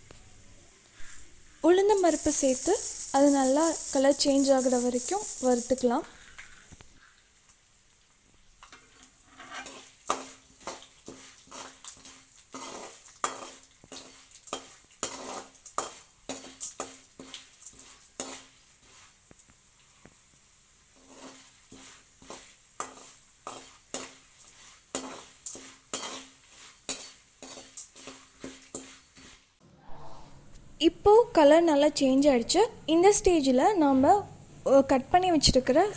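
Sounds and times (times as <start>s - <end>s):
faint sizzle: 0.0s - 35.9s
spatula scraping a pan: 1.0s - 6.3s, 8.6s - 19.4s, 20.9s - 29.6s.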